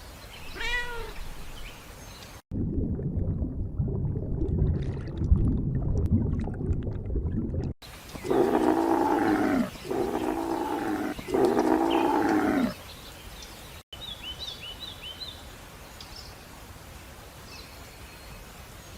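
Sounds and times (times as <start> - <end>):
outdoor background noise: 0.0 - 2.5, 7.8 - 18.9
large animal calling: 8.2 - 12.8.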